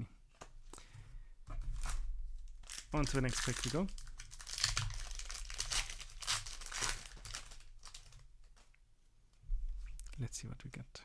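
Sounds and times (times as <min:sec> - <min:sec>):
foil wrapper tearing and crinkling: 0:02.6 - 0:08.6.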